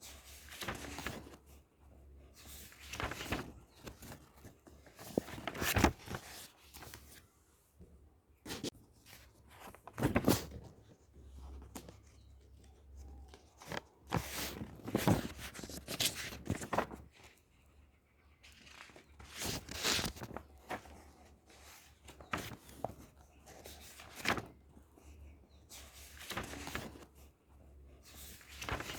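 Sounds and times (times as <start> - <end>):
book pages turning: 0.1 - 1.6, 2.4 - 7.2, 8.5 - 17.4, 18.4 - 25.1, 25.7 - 27.3, 28.0 - 28.9.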